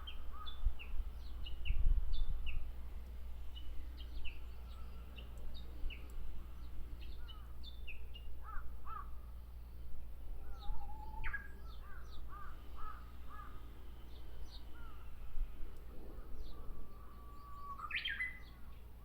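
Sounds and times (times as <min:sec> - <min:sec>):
bird singing whistled notes: 0:10.4 - 0:12.2, 0:16.4 - 0:18.9.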